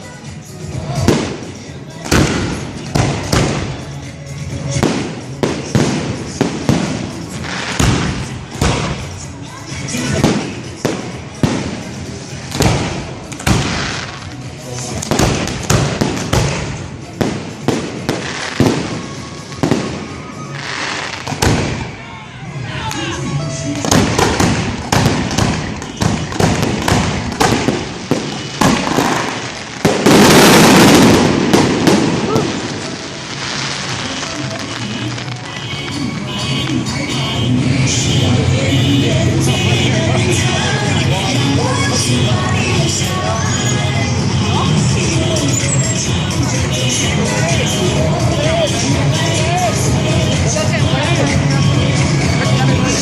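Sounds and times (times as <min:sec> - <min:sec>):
fireworks bangs with echo: 0:00.7 - 0:22.0, 0:23.6 - 0:53.0.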